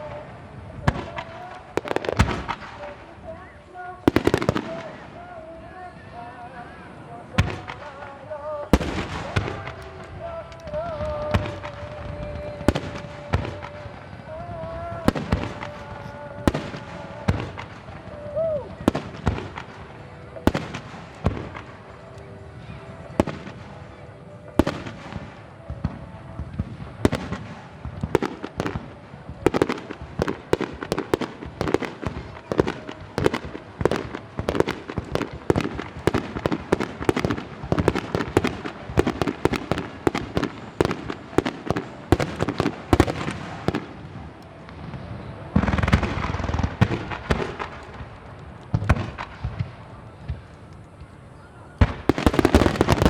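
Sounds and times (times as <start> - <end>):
firework shells bursting: 51.8 - 53.0.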